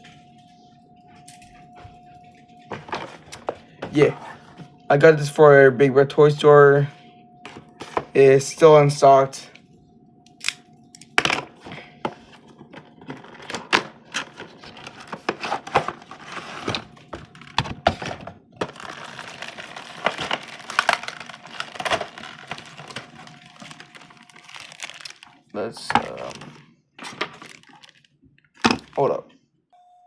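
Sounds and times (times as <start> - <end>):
plastic packaging crinkling and tearing: 12.8 - 29.2.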